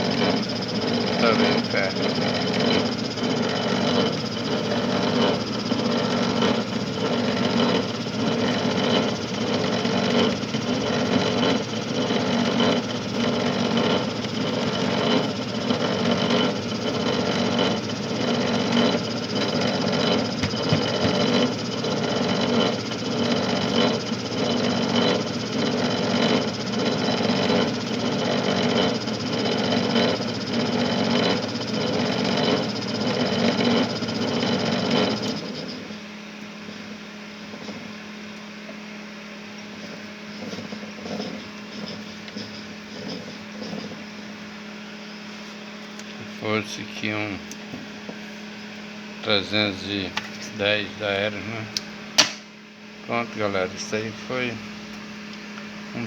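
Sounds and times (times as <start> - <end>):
gears growling: 0.0 - 28.9
coil-winding machine running: 0.0 - 52.2, 52.8 - 56.0.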